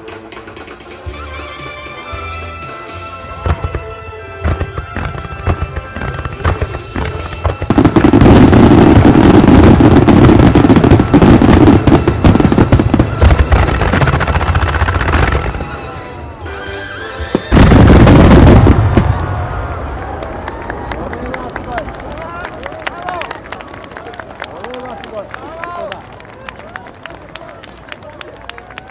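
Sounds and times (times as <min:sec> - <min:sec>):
fireworks bursts and crackle: 0:00.0 - 0:16.2, 0:17.1 - 0:22.5
music: 0:00.0 - 0:18.9.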